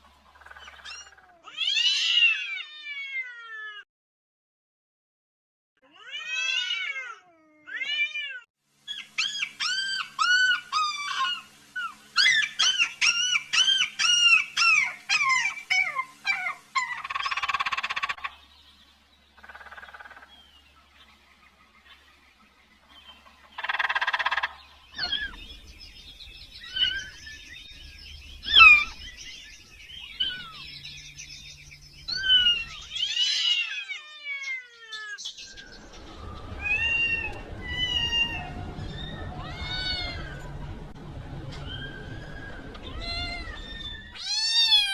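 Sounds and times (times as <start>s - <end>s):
kitten meowing: 44.2s - 44.9s.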